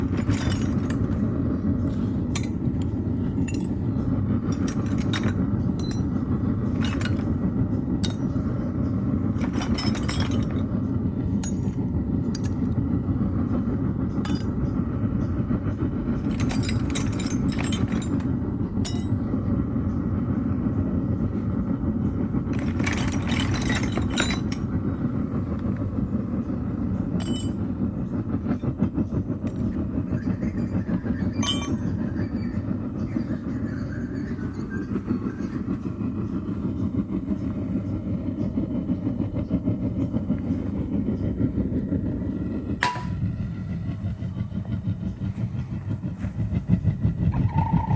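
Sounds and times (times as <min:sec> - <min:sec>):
metallic clinks: 0:00.0 - 0:01.3, 0:02.3 - 0:07.4, 0:08.0 - 0:08.4, 0:09.4 - 0:10.7, 0:11.3 - 0:12.7, 0:14.2 - 0:14.6, 0:16.3 - 0:19.2, 0:22.6 - 0:24.7, 0:27.2 - 0:27.7, 0:31.4 - 0:31.9
furnace burner rumbling: 0:00.0 - 0:47.9.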